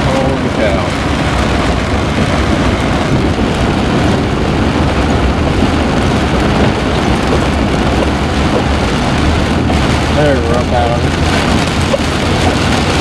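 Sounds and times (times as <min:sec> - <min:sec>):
low engine and road rumble: 0:00.0 - 0:13.0
tyre spray and water rushing: 0:06.4 - 0:13.0.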